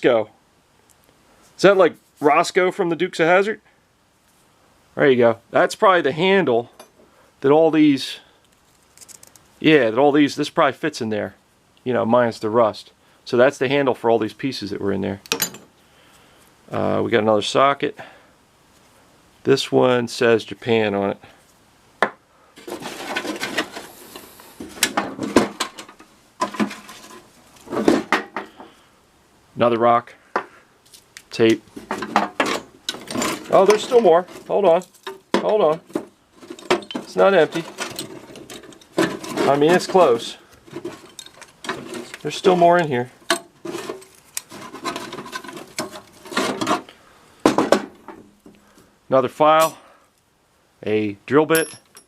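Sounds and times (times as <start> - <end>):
metal tools clattering in toolbox: 15.3 - 15.7, 22.6 - 23.8, 31.8 - 42.5, 43.2 - 46.8, 51.5 - 52.0.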